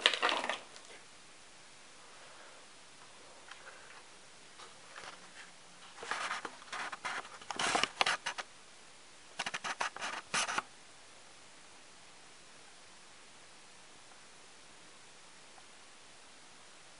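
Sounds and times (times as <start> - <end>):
packaging scratching and rustling: 4.9 - 8.4, 9.4 - 10.6.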